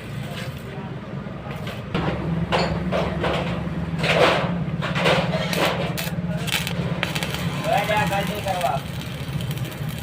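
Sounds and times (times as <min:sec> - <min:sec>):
metal knocks and scrapes: 0:01.9 - 0:07.5.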